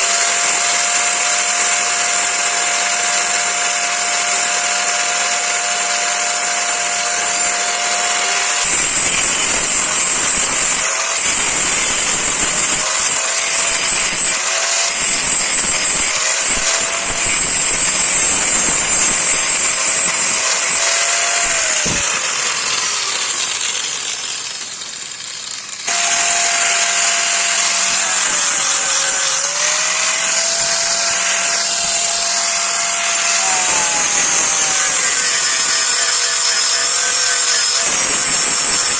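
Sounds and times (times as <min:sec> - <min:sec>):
electric grinder grinding knife: 0:00.0 - 0:38.9.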